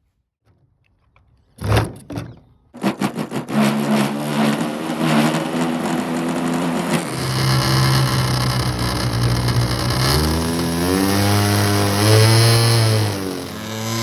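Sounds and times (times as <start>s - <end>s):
model aircraft engine running: 2.8s - 14.0s
model engine cranking: 2.8s - 14.0s.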